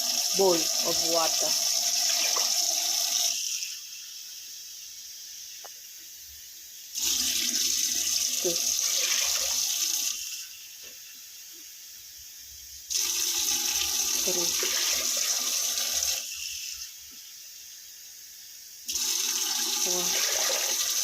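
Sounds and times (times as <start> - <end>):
water pouring into a pot: 0.0 - 4.4, 6.9 - 11.4, 12.8 - 17.0, 18.9 - 21.0.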